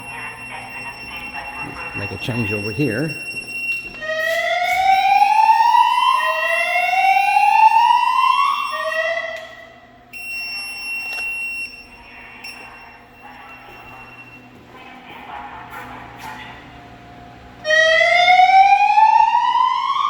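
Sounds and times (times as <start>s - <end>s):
steady high tone: 0.0s - 14.4s
rising whoop alarm tone: 3.9s - 9.7s, 17.6s - 20.0s.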